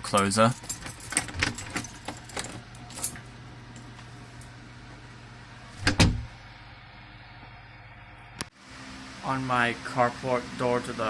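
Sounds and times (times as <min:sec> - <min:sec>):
steady low hum: 0:00.0 - 0:11.0
door shutting with double knock: 0:05.8 - 0:06.3.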